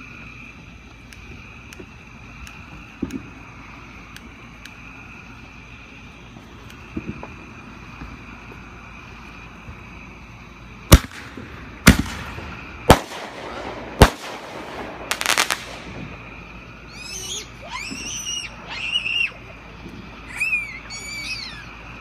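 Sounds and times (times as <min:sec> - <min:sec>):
firework crackles: 0:00.0 - 0:22.0
firework bangs: 0:10.9 - 0:17.2.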